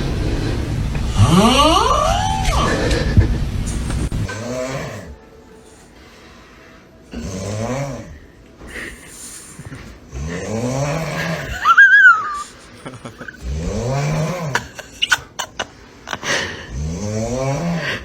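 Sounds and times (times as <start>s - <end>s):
person snoring heavily: 2.7s - 5.8s, 7.1s - 15.2s, 16.2s - 18.0s.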